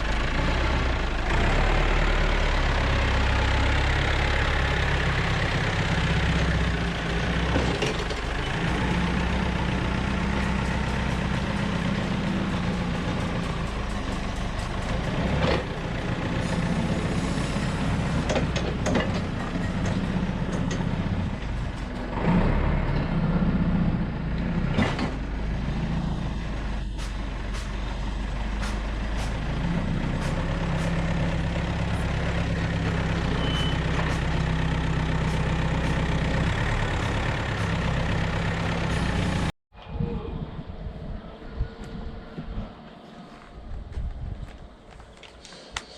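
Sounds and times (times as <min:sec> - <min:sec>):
heavy machinery engine running: 0:00.0 - 0:39.5
clanks and knocks: 0:18.2 - 0:22.0.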